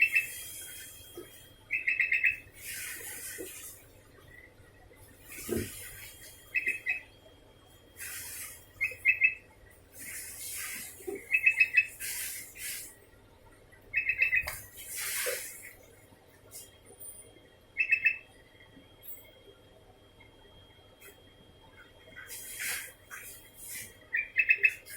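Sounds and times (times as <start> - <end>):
hissing rustles: 8.0 - 8.6, 10.0 - 11.3, 12.0 - 12.9, 14.6 - 15.8, 22.3 - 24.0.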